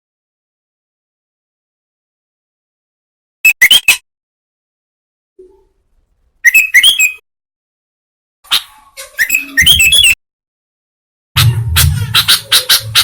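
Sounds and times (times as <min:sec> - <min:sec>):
low rumble: 0:11.4 - 0:13.0.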